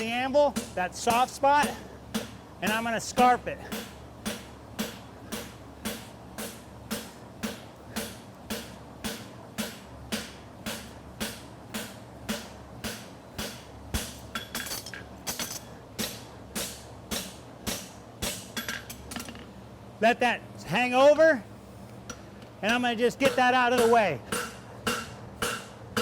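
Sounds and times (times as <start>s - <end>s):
hammer ringing on anvil: 22.7s - 26.0s.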